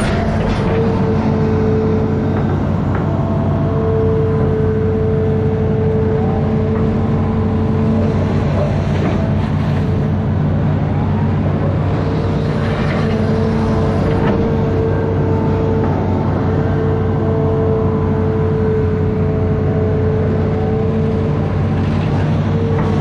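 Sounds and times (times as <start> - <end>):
diesel engine running: 0.0 - 23.0
high steady whine: 0.0 - 23.0.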